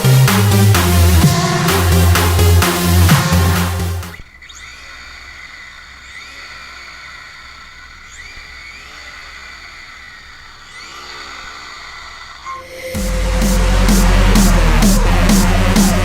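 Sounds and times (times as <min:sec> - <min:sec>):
electric motor whining: 0:00.0 - 0:16.0
steady hum: 0:12.4 - 0:16.0.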